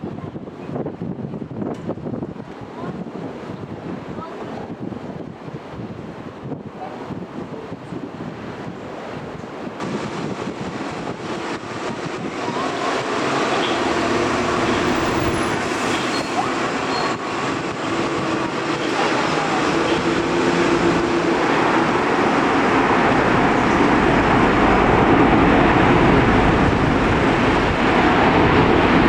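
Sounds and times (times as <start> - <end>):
jet engines rumbling: 8.5 - 29.0.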